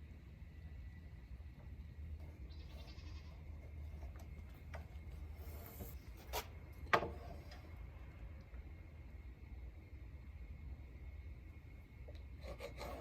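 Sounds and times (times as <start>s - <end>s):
low hum: 0.0s - 13.0s
scraping hisses: 5.0s - 7.9s.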